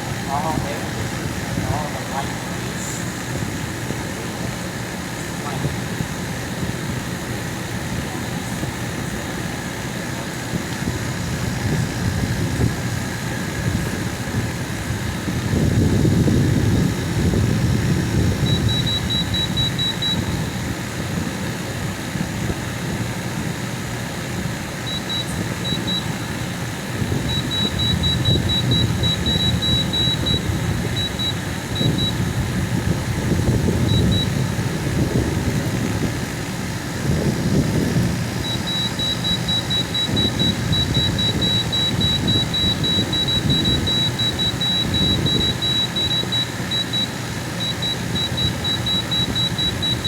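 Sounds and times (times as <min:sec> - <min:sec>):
air conditioner fan whoosh: 0:00.0 - 0:50.0
rapid high-pitched beeps: 0:17.3 - 0:20.5, 0:24.9 - 0:26.3, 0:26.9 - 0:35.4, 0:38.4 - 0:50.0.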